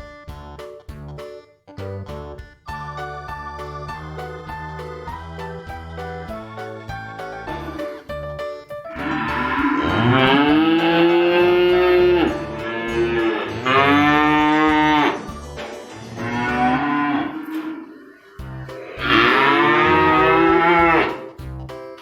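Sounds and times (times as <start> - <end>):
background music: 0.0 - 22.0
cow mooing: 9.0 - 15.3, 16.2 - 18.0, 19.0 - 21.2.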